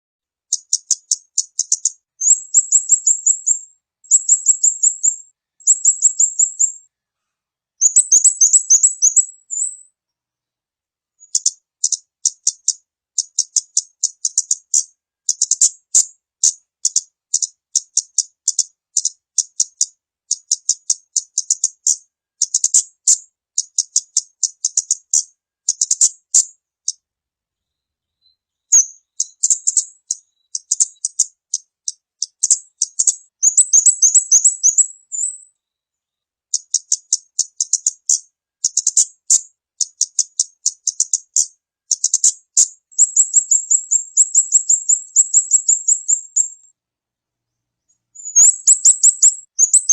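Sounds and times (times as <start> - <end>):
high bird chirps: 0.5 - 6.9, 7.8 - 10.0, 11.2 - 27.0, 27.6 - 46.8, 47.5 - 49.9
rising bird trill: 0.5 - 6.9, 7.8 - 9.8, 28.6 - 35.5, 39.8 - 46.7, 48.2 - 49.9.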